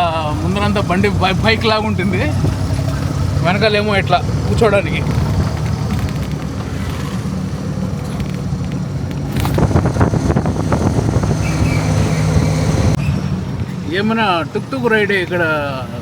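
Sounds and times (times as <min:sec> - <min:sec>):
engine humming while riding: 0:00.0 - 0:16.0
road and wind noise: 0:00.0 - 0:16.0
rattling clicks: 0:04.3 - 0:13.0.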